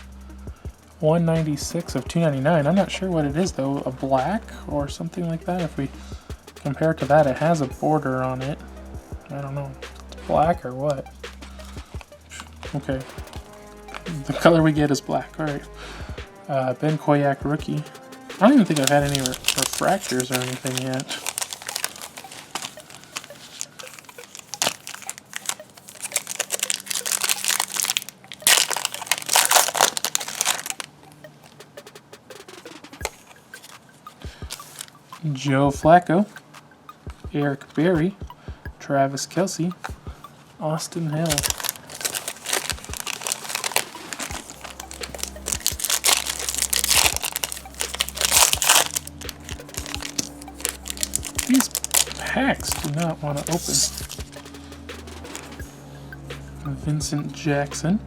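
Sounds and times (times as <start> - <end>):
card pack wrappers crinkling: 12.0 - 14.4, 17.7 - 31.8, 34.4 - 35.0, 41.1 - 55.6.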